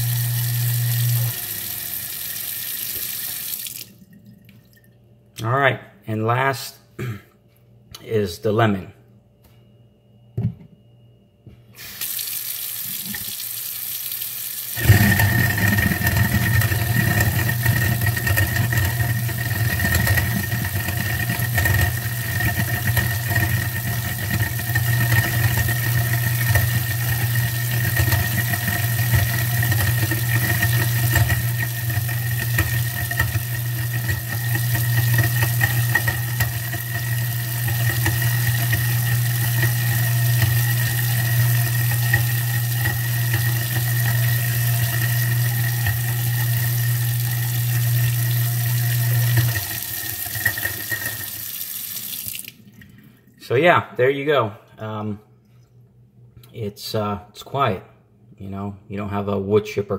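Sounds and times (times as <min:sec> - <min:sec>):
garbage disposal grinding: 0:00.0 - 0:04.2, 0:14.7 - 0:53.1
tap water running: 0:00.0 - 0:04.9, 0:11.8 - 0:53.3.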